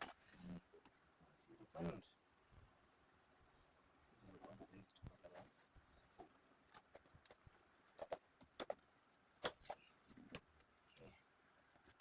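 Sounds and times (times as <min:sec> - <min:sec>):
faint clicks and taps: 0:04.3 - 0:12.0.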